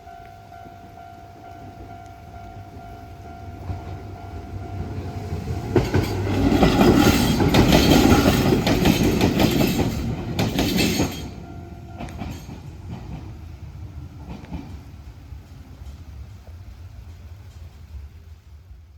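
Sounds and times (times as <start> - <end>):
train wheels clattering over rail joints: 3.6 - 16.2.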